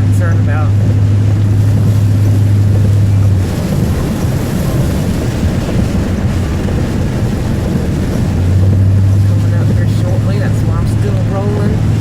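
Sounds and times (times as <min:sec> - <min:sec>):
car driving through flood water: 0:00.0 - 0:12.0.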